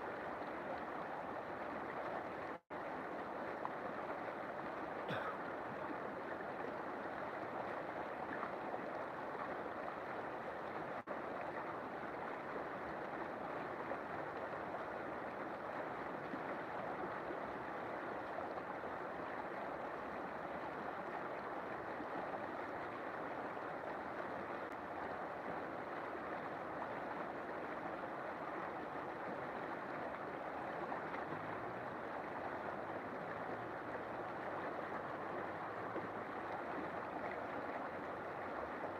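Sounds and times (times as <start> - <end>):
river water rushing: 21.4 - 38.9.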